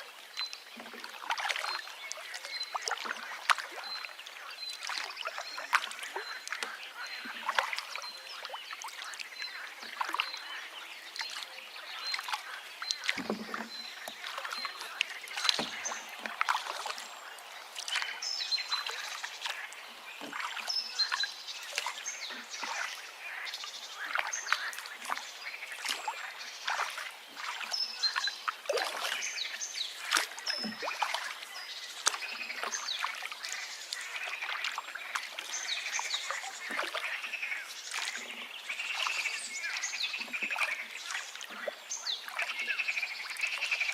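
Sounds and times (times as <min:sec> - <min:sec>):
river water babbling: 0:00.0 - 0:43.9
birds chirping: 0:00.1 - 0:43.9.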